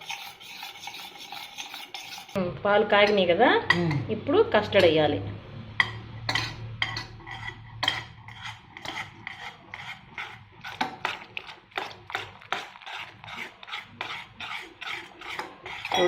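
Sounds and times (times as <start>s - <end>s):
spoon scraping a pan: 0.0s - 2.4s, 5.8s - 16.0s.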